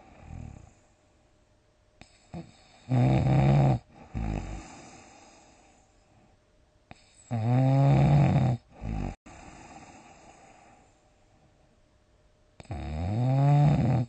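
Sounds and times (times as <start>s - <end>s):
person snoring: 2.0s - 5.7s, 6.9s - 10.9s, 12.6s - 14.0s.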